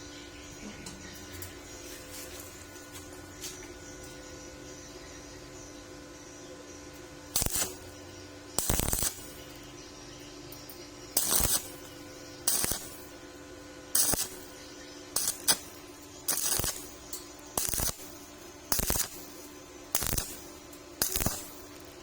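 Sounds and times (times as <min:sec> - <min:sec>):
steady hum: 0:00.0 - 0:22.0
welding arc crackle: 0:07.0 - 0:22.0.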